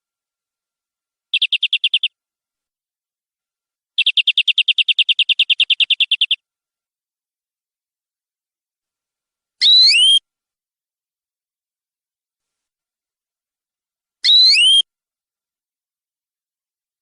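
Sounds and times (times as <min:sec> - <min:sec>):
canary singing trills: 0:01.3 - 0:02.1, 0:04.0 - 0:06.4, 0:09.6 - 0:10.2, 0:14.2 - 0:14.8.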